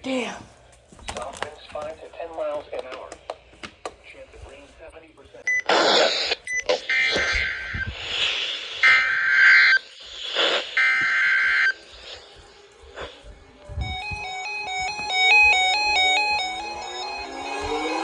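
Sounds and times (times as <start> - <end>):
rising tones: 10.8 - 18.0
stepping electronic beeps melody: 13.8 - 18.0.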